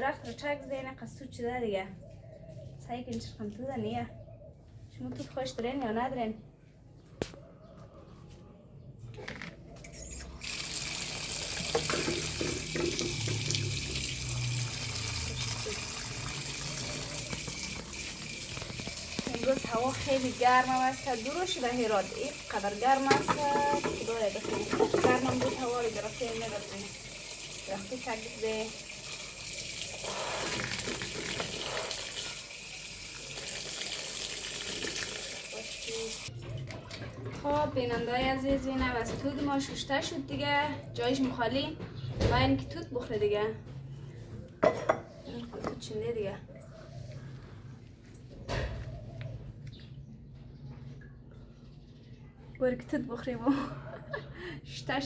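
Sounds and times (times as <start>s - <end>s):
water running from tap: 10.2s - 36.3s.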